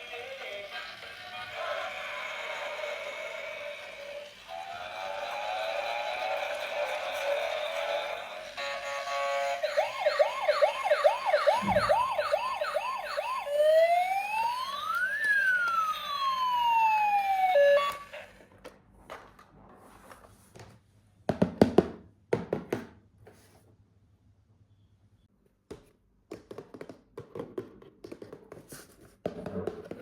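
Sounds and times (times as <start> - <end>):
electronic toy siren: 1.4 - 18.3.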